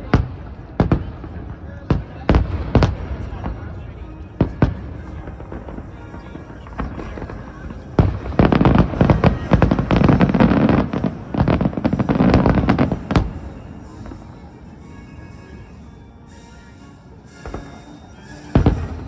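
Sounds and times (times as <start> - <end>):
fireworks popping and banging: 0.1 - 14.3.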